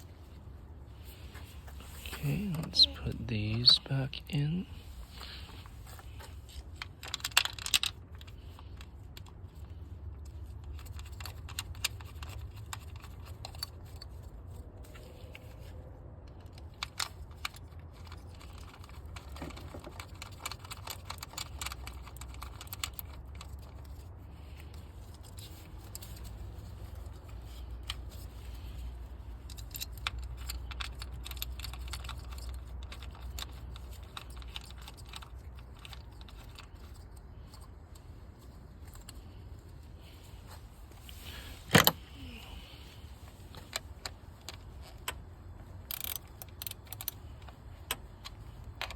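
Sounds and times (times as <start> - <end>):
steady low hum: 0.0 - 10.5
small clicks and light rattles: 5.2 - 15.7, 16.3 - 42.0, 43.2 - 48.9.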